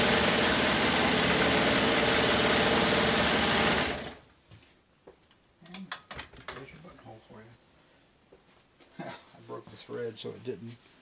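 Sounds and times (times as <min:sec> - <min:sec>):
sewing machine running: 0:00.0 - 0:04.2.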